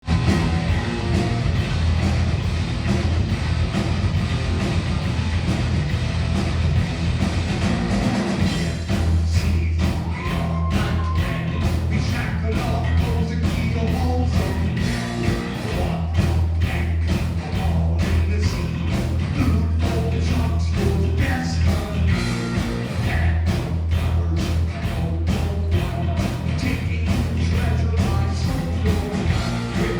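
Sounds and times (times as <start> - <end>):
heavy metal band playing: 0.0 - 29.9
person singing: 9.4 - 29.9.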